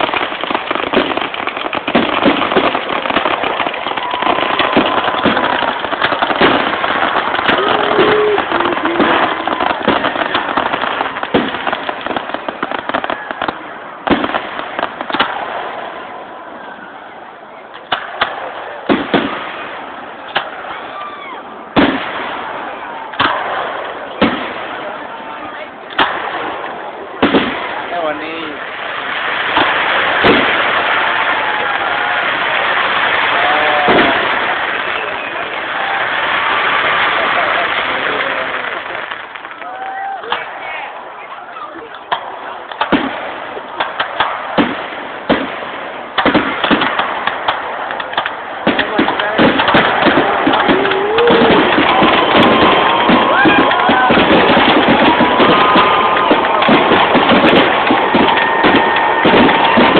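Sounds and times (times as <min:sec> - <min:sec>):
crackle of bursting shells: 0:00.0 - 0:15.5, 0:28.4 - 0:40.5, 0:42.0 - 0:59.9
firework bangs: 0:00.0 - 0:59.9.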